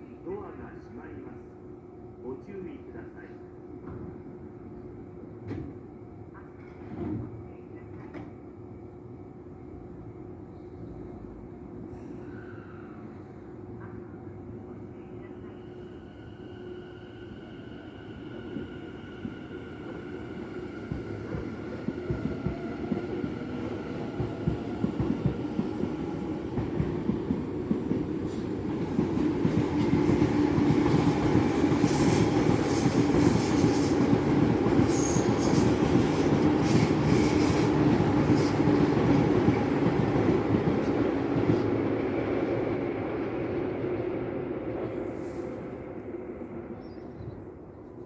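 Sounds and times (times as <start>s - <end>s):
electric train passing: 15.3s - 48.0s.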